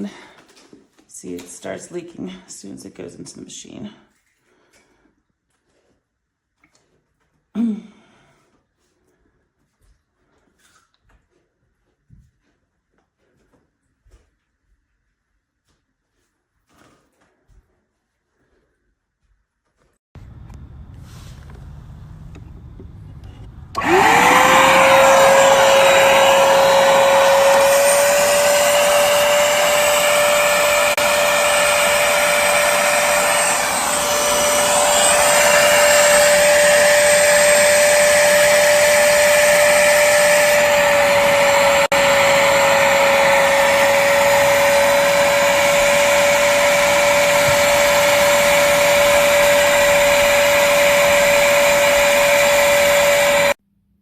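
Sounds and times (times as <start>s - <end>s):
spot cleaner motor whine: 20.2s - 53.6s
suction air rushing: 23.8s - 53.6s.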